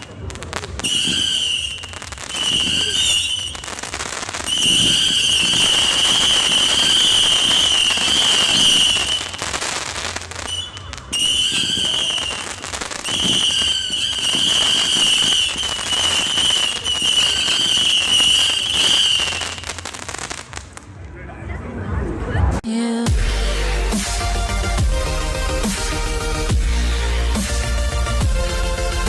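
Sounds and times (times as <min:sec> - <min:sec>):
firework crackling: 0:00.0 - 0:21.1
shrill firework whistles: 0:00.7 - 0:20.1.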